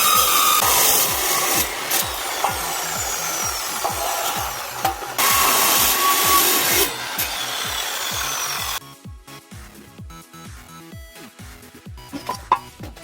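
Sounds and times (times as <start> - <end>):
rasping scraping sound: 0.0 - 8.8
background music with steady beat: 0.0 - 13.0.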